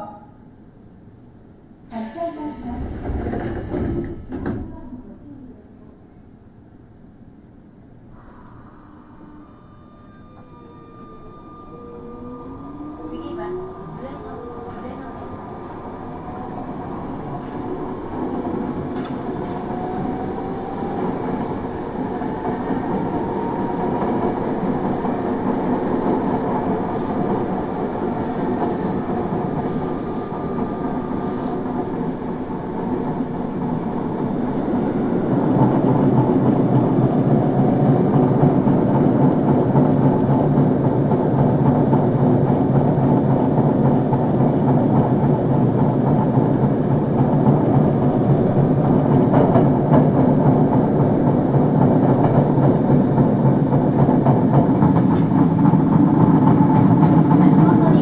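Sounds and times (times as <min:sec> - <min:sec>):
subway car running noise: 0:00.0 - 0:58.0
subway car motor tones: 0:01.8 - 0:06.5, 0:08.0 - 0:58.0.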